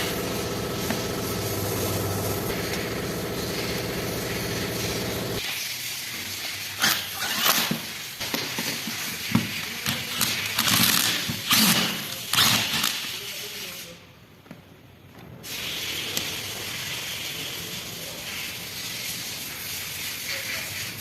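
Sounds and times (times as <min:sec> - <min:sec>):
motor-driven tool humming: 0:00.0 - 0:05.4
short hissing bursts: 0:00.0 - 0:08.2, 0:15.4 - 0:21.0.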